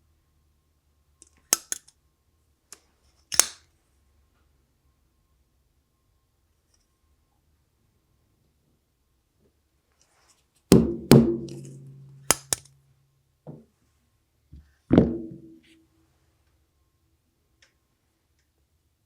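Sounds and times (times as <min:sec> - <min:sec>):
heavy knocks with ringing hum: 0:10.7 - 0:12.1
sharp clicks: 0:12.2 - 0:12.7.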